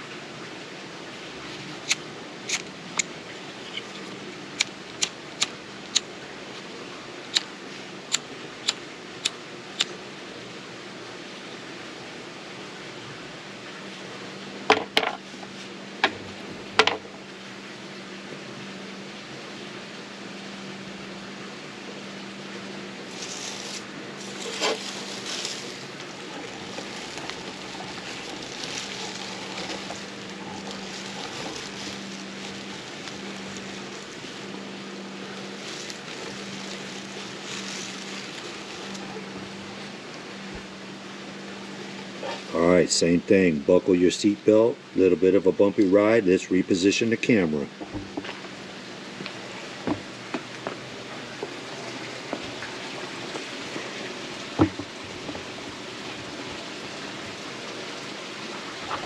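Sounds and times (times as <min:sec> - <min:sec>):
steady low hum: 0:00.0 - 0:59.0
soft hissing: 0:23.0 - 0:40.6.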